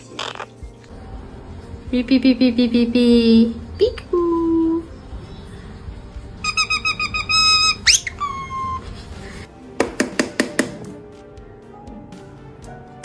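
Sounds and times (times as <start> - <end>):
parrot mimicking beeps and whistle: 6.4 - 8.8.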